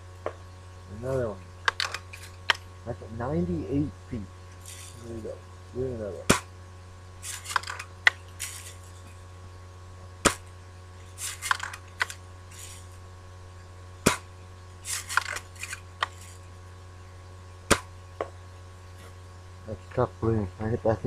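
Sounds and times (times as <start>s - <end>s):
bb gun shots cracking: 6.3s - 6.5s, 10.2s - 10.5s, 14.0s - 14.3s, 17.7s - 17.9s.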